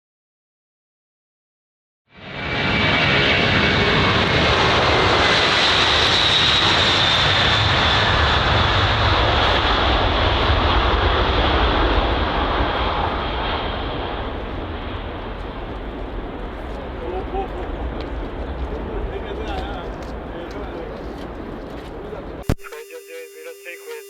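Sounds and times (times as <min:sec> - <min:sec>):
jet engines roaring: 0:02.2 - 0:22.5.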